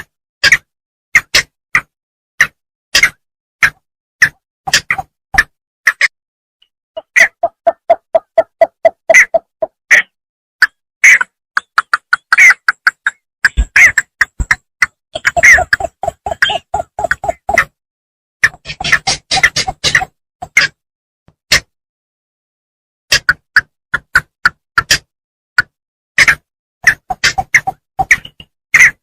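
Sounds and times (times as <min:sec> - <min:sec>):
bittern calling: 0:15.1 - 0:17.7.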